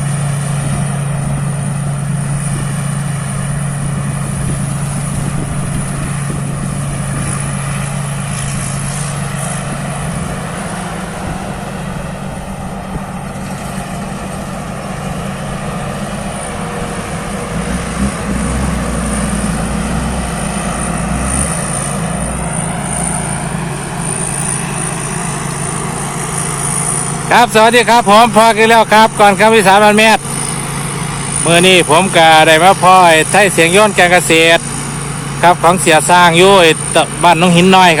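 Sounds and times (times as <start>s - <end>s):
deep rumble: 0.0s - 26.8s
combine harvester engine droning: 0.0s - 38.0s.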